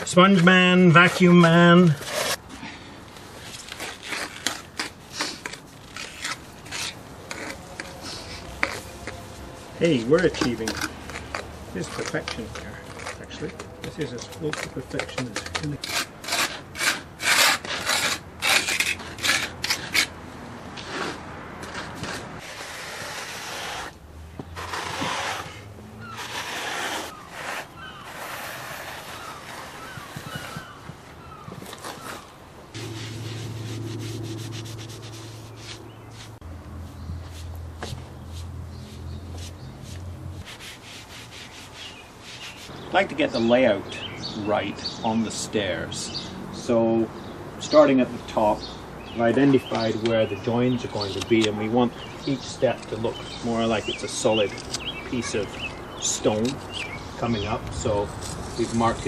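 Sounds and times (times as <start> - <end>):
scraping strokes across slate tile: 3.5 - 20.1, 22.0 - 24.0, 24.6 - 30.7, 32.8 - 36.4, 39.4 - 42.7
scraping and rubbing on tile: 3.8 - 9.2, 22.0 - 24.0, 24.6 - 30.7
birds chirping faintly: 29.1 - 40.0, 41.4 - 58.0.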